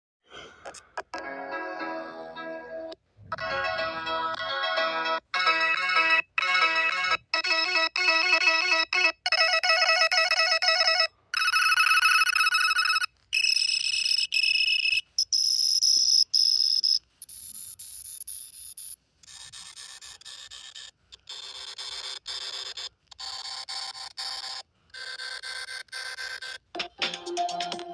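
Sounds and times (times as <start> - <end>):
ringtone-like melodies: 1.1 - 17.6
electronic beeping tones: 12.3 - 17.6.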